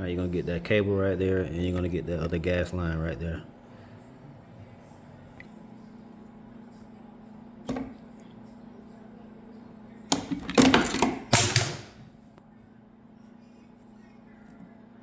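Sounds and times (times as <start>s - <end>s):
rattling plastic and metal parts: 10.1s - 12.0s.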